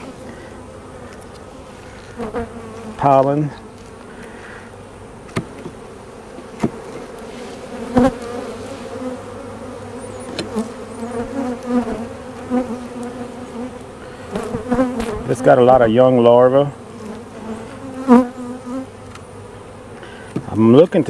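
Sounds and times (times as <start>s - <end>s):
bee buzzing close past: 0.0s - 20.8s
bees humming around hive: 0.0s - 21.0s.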